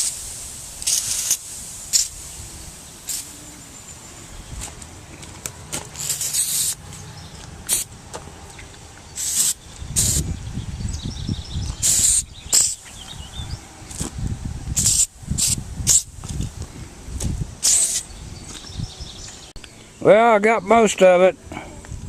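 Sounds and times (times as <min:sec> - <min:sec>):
aerosol spray hissing: 0:00.0 - 0:03.8, 0:06.0 - 0:06.8, 0:07.7 - 0:07.9, 0:09.2 - 0:10.2, 0:11.8 - 0:13.2, 0:14.7 - 0:16.2, 0:17.6 - 0:18.1.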